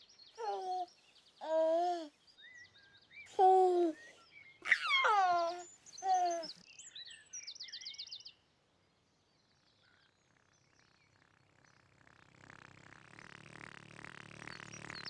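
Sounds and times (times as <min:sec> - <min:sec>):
bird calls: 0:00.0 - 0:07.8
bird chirps and trill: 0:03.3 - 0:07.0.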